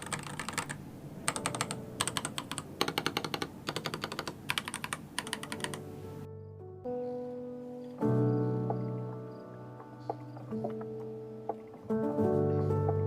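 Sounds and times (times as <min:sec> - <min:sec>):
mechanical keyboard key clicks: 0:00.0 - 0:05.8
faint music: 0:03.9 - 0:13.0.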